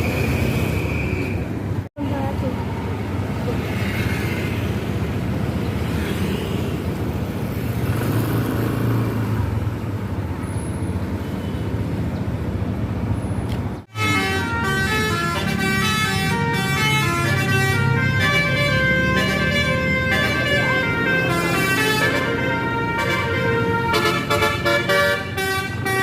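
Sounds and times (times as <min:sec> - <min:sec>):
bus engine and road noise: 0:00.0 - 0:26.0
multi-tone air horn melody: 0:13.9 - 0:26.0.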